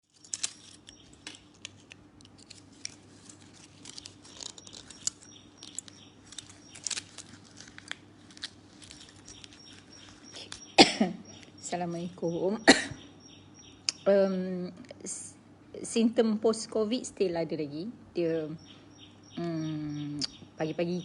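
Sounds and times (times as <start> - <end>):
small clicks and crinkling rustles: 0.0 - 10.8
faint steady hum: 0.0 - 21.0.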